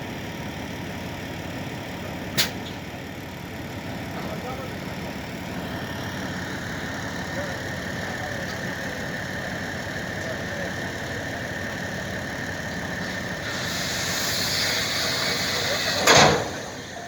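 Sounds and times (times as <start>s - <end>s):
engine running: 0.0s - 17.0s
thin steady whine: 5.6s - 17.0s.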